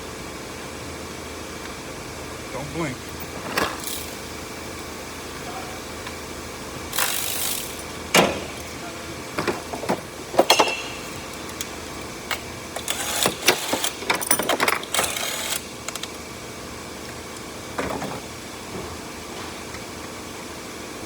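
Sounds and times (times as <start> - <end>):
steady background hum: 0.0 - 21.0
hand tools clicking and rattling: 6.9 - 8.8, 9.7 - 11.7, 12.3 - 16.2.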